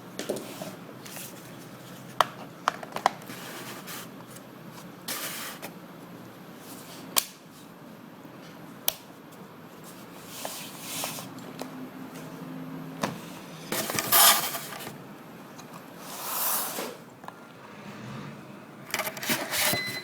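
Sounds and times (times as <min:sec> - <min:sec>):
plastic and metal parts scraping: 0:18.9 - 0:20.0.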